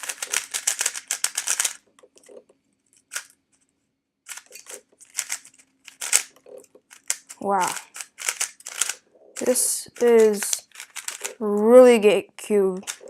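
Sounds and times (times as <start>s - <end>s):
puzzle cube clicking as turned: 0.0s - 2.4s, 3.0s - 3.3s, 4.3s - 11.4s, 12.8s - 13.0s.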